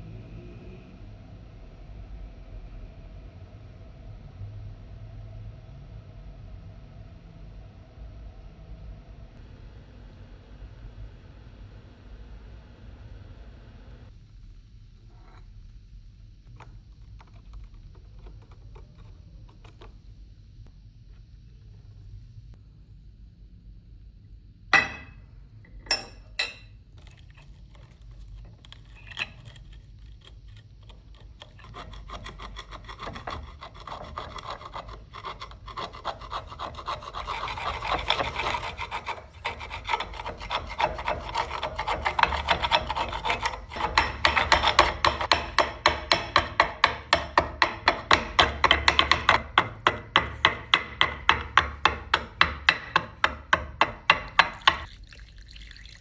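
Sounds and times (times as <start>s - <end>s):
file rasping on steel: 31.4s - 54.4s.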